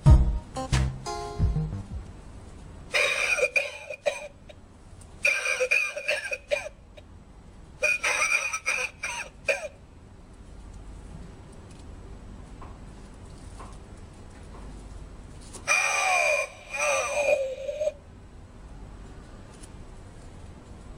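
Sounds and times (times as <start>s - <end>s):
recorded coughing through speaker: 2.9s - 4.6s, 5.2s - 6.8s, 7.8s - 9.8s, 15.7s - 18.0s.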